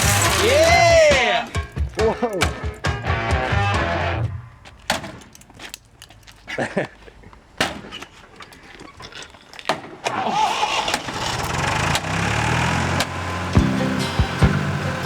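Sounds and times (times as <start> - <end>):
car engine running: 0.0 - 4.9, 10.1 - 15.0
car engine starting: 0.0 - 7.6, 9.6 - 15.0
clicks and knocks: 0.0 - 13.6.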